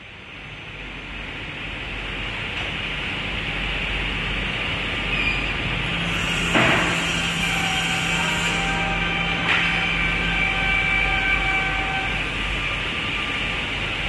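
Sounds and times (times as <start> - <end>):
table saw blade whirring: 6.0 - 12.2.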